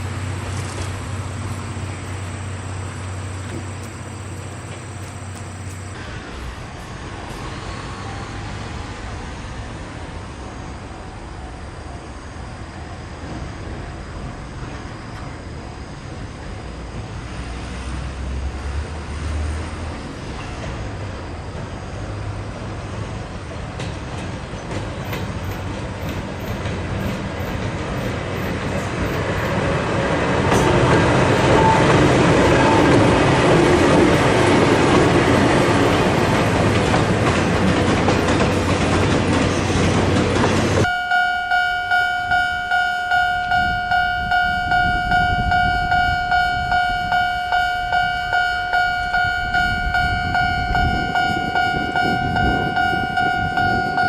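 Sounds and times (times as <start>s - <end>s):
train wheels rushing on rails: 0.0s - 40.9s, 42.3s - 54.0s
level-crossing warning bell: 30.5s - 36.7s, 40.8s - 54.0s.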